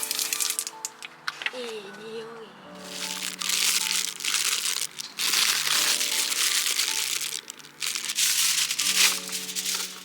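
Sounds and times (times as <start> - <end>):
background music: 0.0 - 10.0
crinkling and rustling: 2.8 - 10.0.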